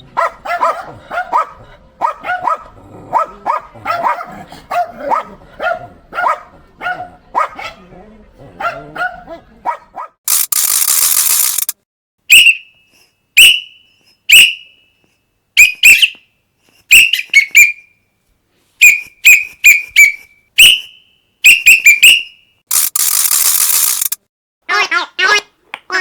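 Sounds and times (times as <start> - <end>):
toy whistle toots: 12.3 - 12.8, 13.4 - 14.8, 18.8 - 24.1.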